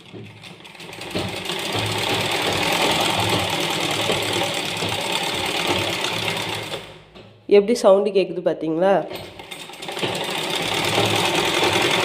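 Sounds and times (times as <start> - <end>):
sewing machine stitching: 0.0 - 7.0, 9.1 - 12.0.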